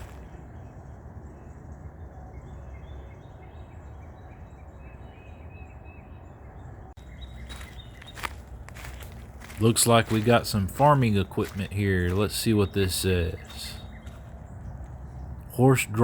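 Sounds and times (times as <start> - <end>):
steady low rumble: 7.0 - 16.0.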